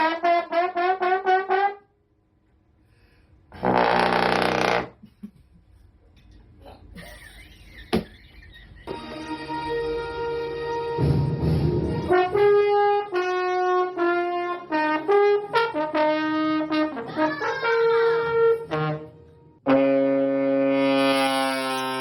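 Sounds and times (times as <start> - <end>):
brass instrument playing notes: 0.0 - 1.9, 3.6 - 4.9, 9.4 - 22.0.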